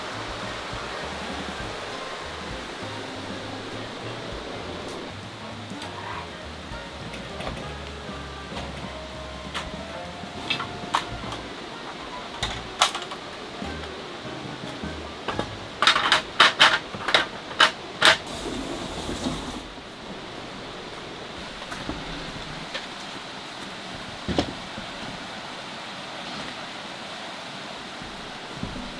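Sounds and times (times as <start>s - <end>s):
steady hiss: 0.0s - 28.9s
clicks and knocks of objects handled: 12.3s - 13.9s, 14.7s - 18.3s.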